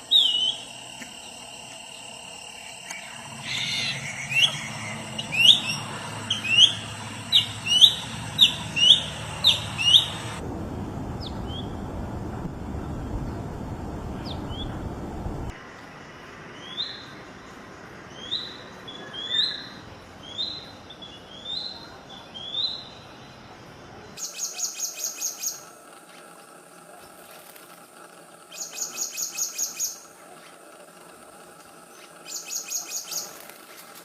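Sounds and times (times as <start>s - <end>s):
songbird chirping: 0.0s - 10.4s
low rumble: 3.1s - 15.5s
background hiss: 22.7s - 34.0s.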